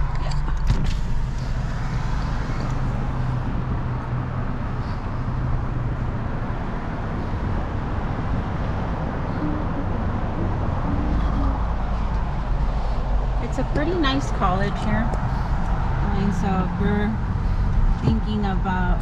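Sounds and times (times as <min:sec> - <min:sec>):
car engine and road noise: 0:00.0 - 0:19.0.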